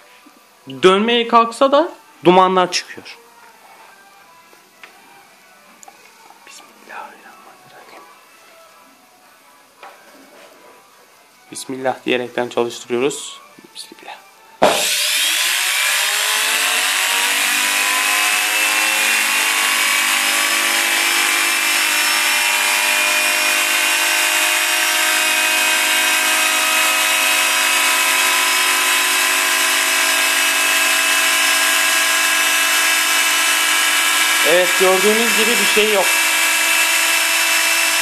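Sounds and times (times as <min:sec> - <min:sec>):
electric motor whine: 0:14.6 - 0:38.0.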